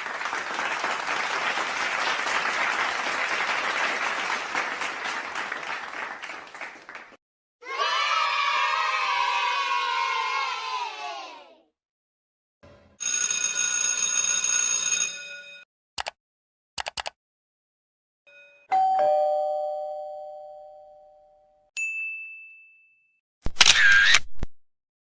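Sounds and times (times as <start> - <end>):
quick clicks: 16.8 - 17.2
short high ding: 18.3 - 23.2
two-note doorbell ding-dong: 18.3 - 23.2.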